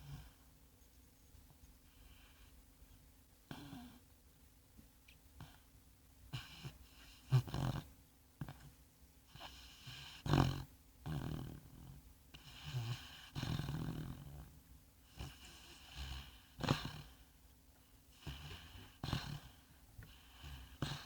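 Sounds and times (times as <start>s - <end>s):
dog snoring: 0.0s - 0.4s, 3.5s - 4.0s, 6.3s - 8.7s, 9.3s - 17.4s, 18.1s - 21.0s
dog snorting: 6.3s - 8.7s, 9.3s - 14.5s, 15.1s - 17.2s, 18.1s - 21.0s.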